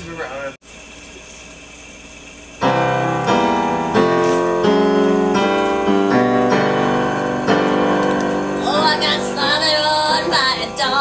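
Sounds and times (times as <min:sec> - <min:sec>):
piano chords: 0:02.6 - 0:11.0.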